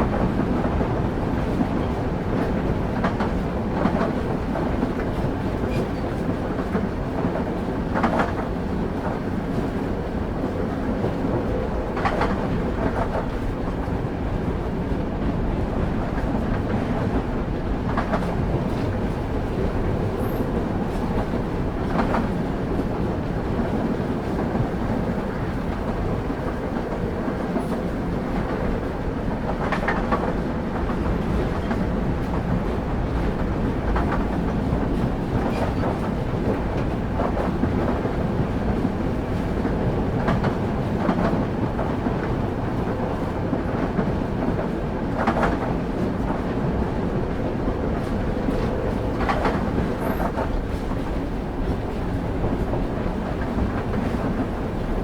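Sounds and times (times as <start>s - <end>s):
train wheels rumbling on track: 0.0s - 55.0s.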